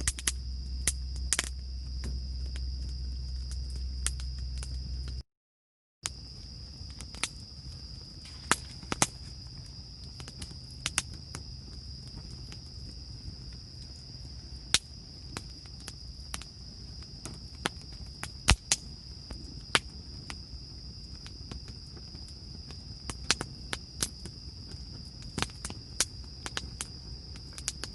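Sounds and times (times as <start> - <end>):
insects chirring: 0.0 - 5.2, 6.0 - 27.9
low steady rumble: 0.0 - 5.2.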